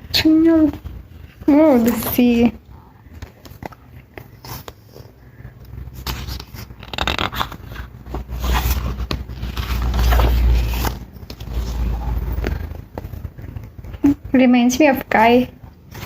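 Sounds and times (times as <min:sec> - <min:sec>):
packaging rustling and crinkling: 0:05.9 - 0:13.8.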